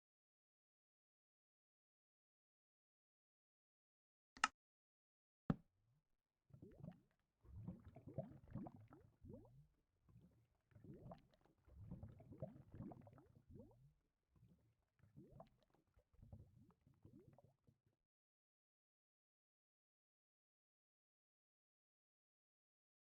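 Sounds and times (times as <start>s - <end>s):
faint gurgling squelches: 6.6s - 17.6s.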